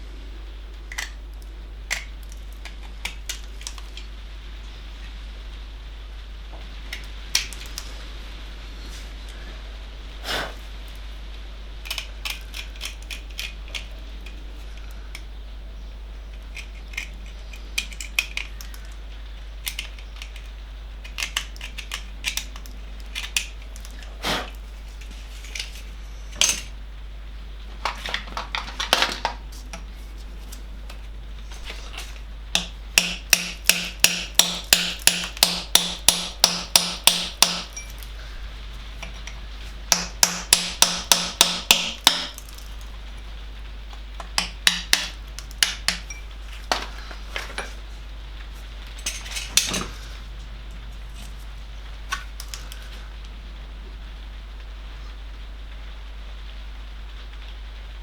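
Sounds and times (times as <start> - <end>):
metal tools clicking and scraping: 11.8 - 14.4, 16.3 - 19.0, 19.6 - 24.0, 25.0 - 26.7, 31.5 - 38.2, 48.9 - 50.2.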